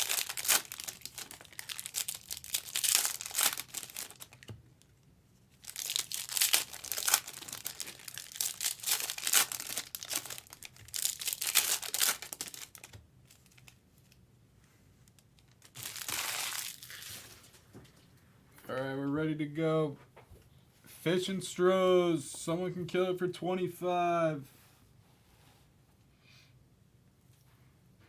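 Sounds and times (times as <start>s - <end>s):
plastic wrapping crinkling and tearing: 0.0s - 4.6s, 5.5s - 14.2s, 15.0s - 17.7s.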